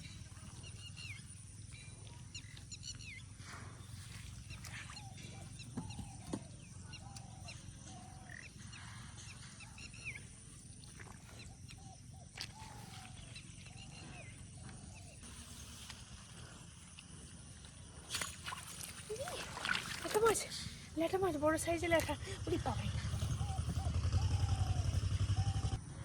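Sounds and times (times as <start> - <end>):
birds chirping and whistling: 0.0 - 10.4, 22.4 - 25.8
steady low rumble: 21.7 - 26.0.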